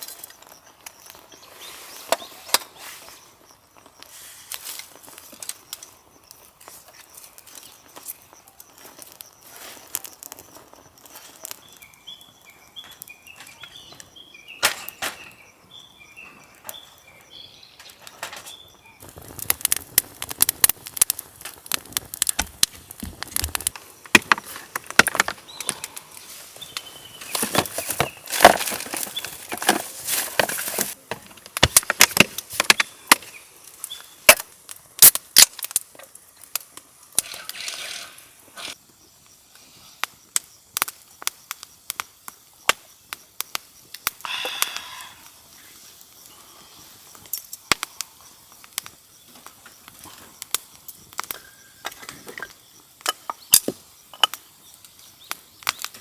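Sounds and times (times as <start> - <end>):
camp gear rustling and clicking: 0.0 - 3.2, 17.8 - 33.4
small bird chirping: 7.0 - 19.3.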